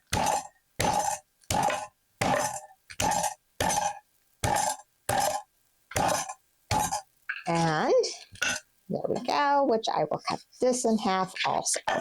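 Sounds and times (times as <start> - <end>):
meat being pounded: 0.0 - 7.1.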